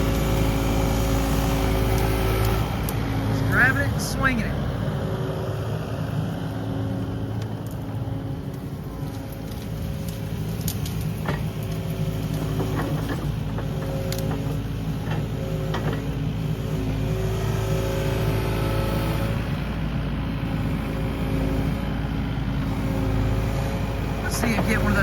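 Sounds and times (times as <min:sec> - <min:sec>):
brush cracking and snapping: 0:00.0 - 0:03.3, 0:06.8 - 0:17.1
excavator diesel engine: 0:00.0 - 0:25.0.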